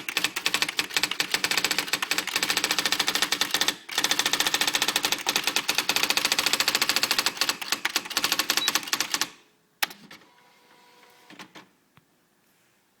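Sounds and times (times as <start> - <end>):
sharp typewriter clack: 0.0 - 10.0
typewriter keys clicking: 0.0 - 10.0.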